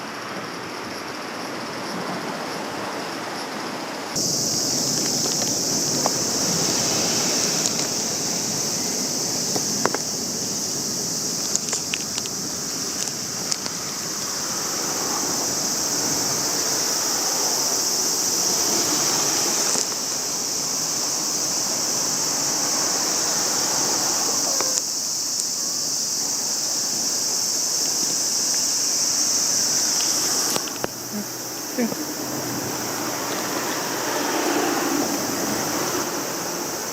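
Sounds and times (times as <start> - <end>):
high-pitched insect chorus: 0.0 - 36.9
low rushing noise: 4.2 - 11.4.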